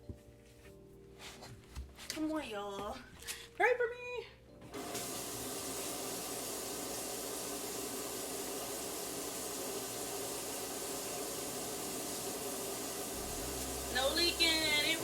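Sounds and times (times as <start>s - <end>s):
faucet water running into sink: 4.7s - 15.0s.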